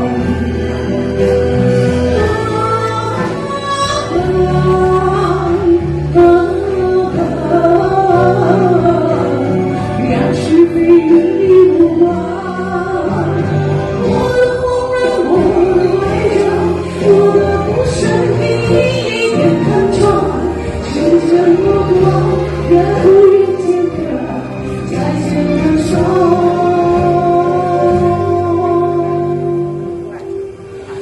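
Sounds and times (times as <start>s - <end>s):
slow sung ballad: 0.0s - 31.0s.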